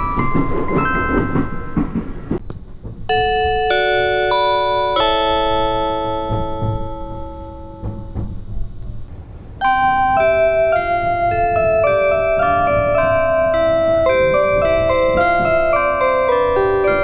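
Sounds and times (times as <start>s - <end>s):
low rumble: 6.6s - 16.7s
electronic chime melody: 9.6s - 17.0s.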